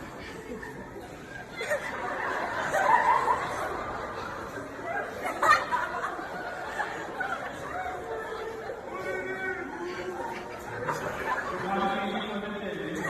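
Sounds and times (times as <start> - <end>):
people laughing: 0.0 - 13.0
people talking: 4.9 - 13.0.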